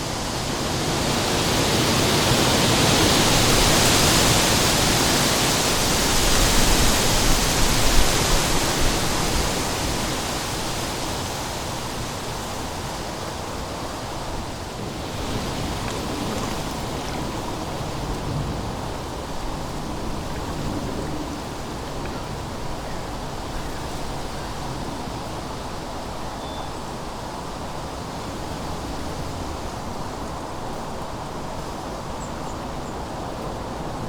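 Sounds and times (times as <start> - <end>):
wind blowing: 0.0 - 26.2.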